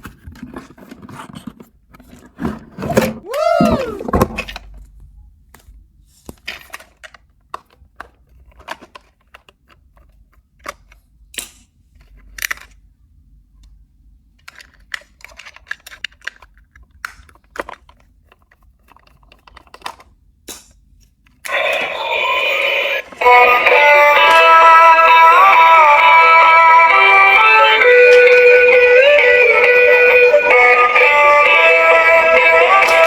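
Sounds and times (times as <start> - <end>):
toys clicking and tapping: 25.6 - 33.0.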